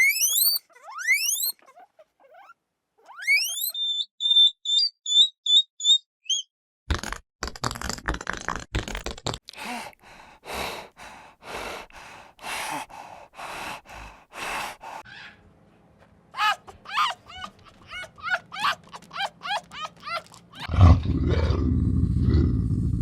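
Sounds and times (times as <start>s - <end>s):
animal chirping calls: 0.0s - 6.5s, 16.4s - 20.7s.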